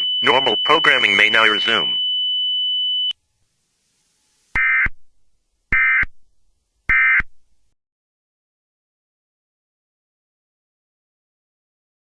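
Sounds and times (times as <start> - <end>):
digital data tone bursts: 0.0 - 2.0.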